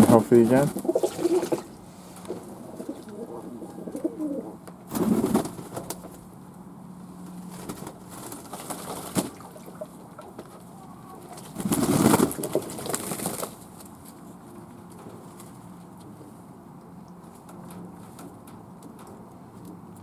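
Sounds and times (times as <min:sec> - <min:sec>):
doves cooing: 0:00.7 - 0:04.6.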